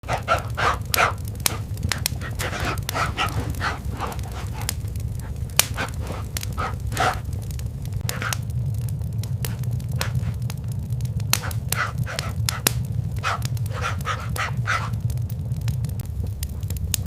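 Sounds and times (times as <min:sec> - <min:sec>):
dog panting: 0:00.0 - 0:08.5, 0:09.2 - 0:10.5, 0:11.3 - 0:15.2
fireplace crackling: 0:00.0 - 0:17.0.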